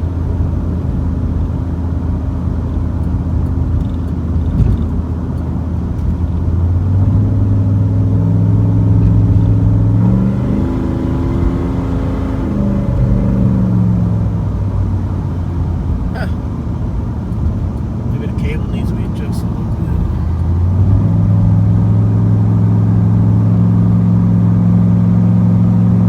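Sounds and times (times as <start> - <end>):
car engine droning: 0.0 - 26.0.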